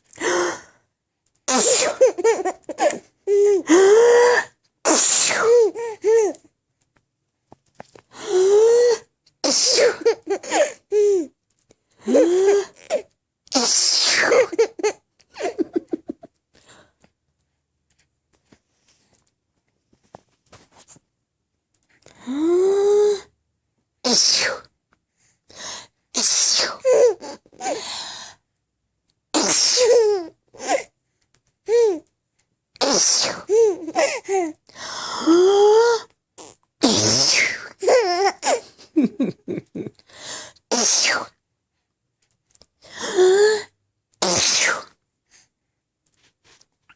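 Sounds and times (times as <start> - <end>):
person sneezing: 1.5 - 2.2, 3.7 - 6.0, 9.4 - 11.1, 13.5 - 14.6, 24.0 - 24.7, 26.2 - 27.8, 32.8 - 34.2, 36.8 - 38.6, 40.7 - 41.4, 44.2 - 45.0
baby giggling: 1.7 - 3.7, 14.2 - 16.3, 37.8 - 39.8.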